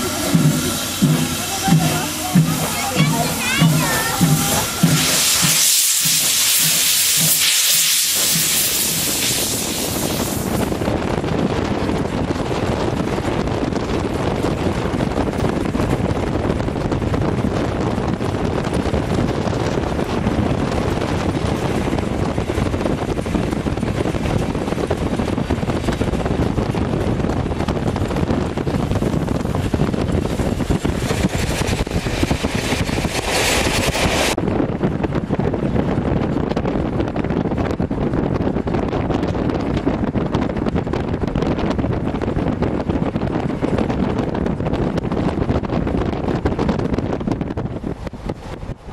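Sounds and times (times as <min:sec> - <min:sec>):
steam train rumbling: 0:00.0 - 0:48.9
wind buffeting the microphone: 0:00.0 - 0:48.9
bright hiss: 0:04.1 - 0:10.5.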